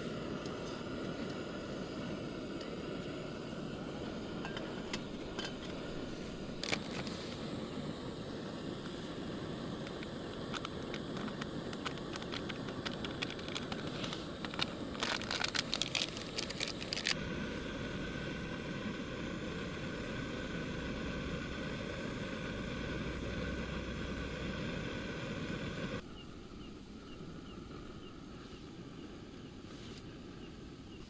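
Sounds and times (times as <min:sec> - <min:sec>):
crackling handling noise: 0:00.1 - 0:17.3.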